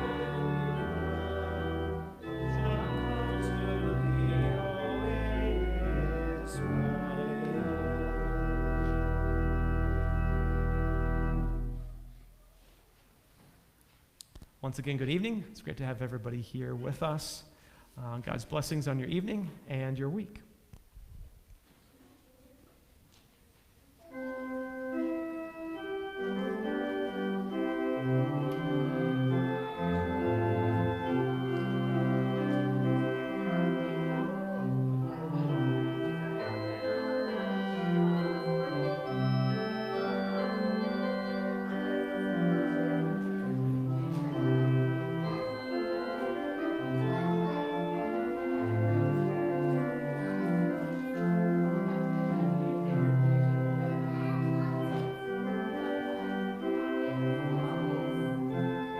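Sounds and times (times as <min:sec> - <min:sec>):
church organ playing chords: 0:00.0 - 0:12.3, 0:24.0 - 0:58.9.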